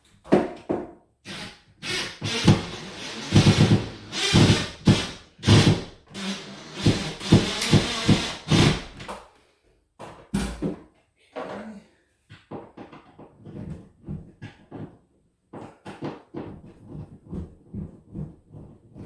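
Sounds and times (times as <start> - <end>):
screw being driven: 1.3 - 8.9.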